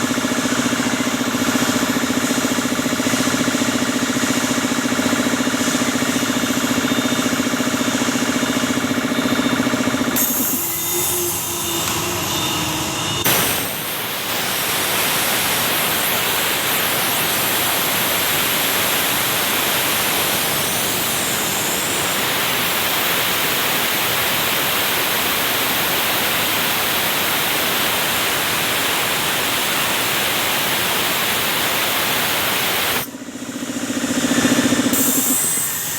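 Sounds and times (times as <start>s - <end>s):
air compressor humming: 0.0s - 24.6s, 28.4s - 35.9s
compressed air hissing: 10.2s - 17.5s.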